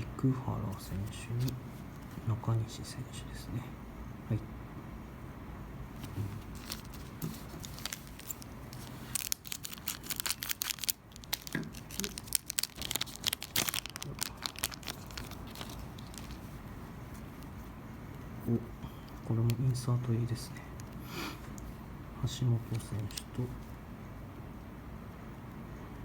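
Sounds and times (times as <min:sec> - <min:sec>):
wrapper tearing and crinkling: 0:06.5 - 0:16.5.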